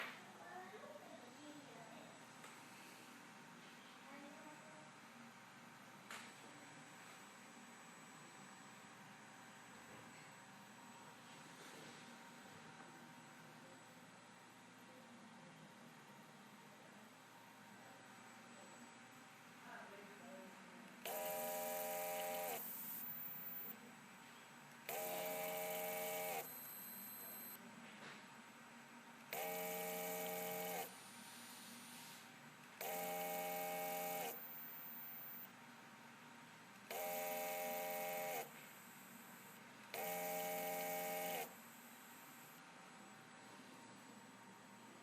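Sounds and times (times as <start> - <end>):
machine motor whine: 21.0 - 23.9, 24.7 - 27.6, 29.2 - 31.3, 32.8 - 35.5, 36.8 - 45.0.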